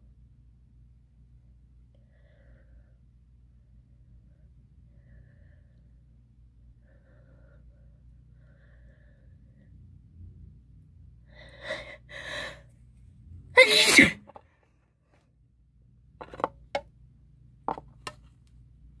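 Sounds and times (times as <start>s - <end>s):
sharp breathy sounds: 11.3s - 12.7s
voiced gasps: 11.3s - 12.7s
woman sneezing: 13.6s - 14.3s.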